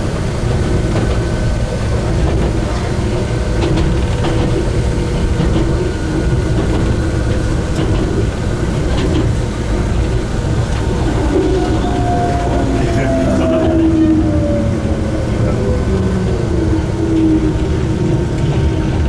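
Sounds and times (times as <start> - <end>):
train motor whine: 0.0 - 19.0
train rumble: 0.0 - 19.0
clicks of train wheels: 0.1 - 14.0.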